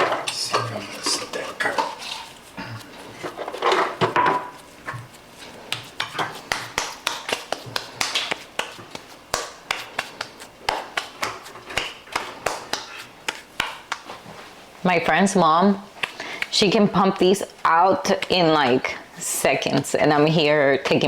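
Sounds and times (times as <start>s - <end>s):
kitchenware clattering: 0.0s - 2.3s, 3.2s - 5.1s
hands slapping dough flat: 4.0s - 14.4s, 16.0s - 16.6s.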